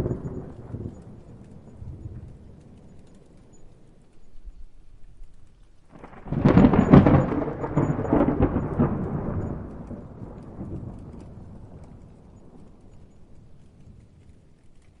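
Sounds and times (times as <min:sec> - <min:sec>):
thunder rumbling: 0:00.0 - 0:05.0, 0:05.9 - 0:15.0.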